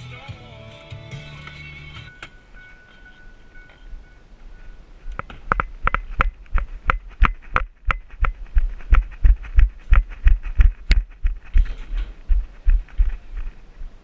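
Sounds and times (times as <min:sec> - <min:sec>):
rhythmic thuds with clicks: 0:05.1 - 0:13.6.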